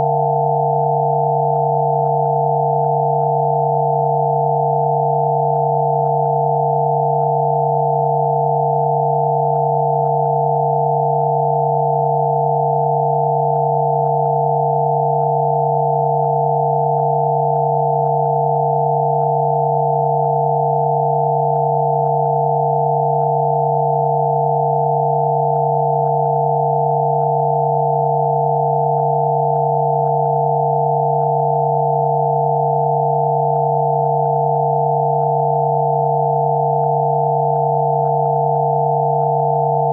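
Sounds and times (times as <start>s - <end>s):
higher sine tones: 0.0s - 39.9s
low sine tone: 0.0s - 39.9s.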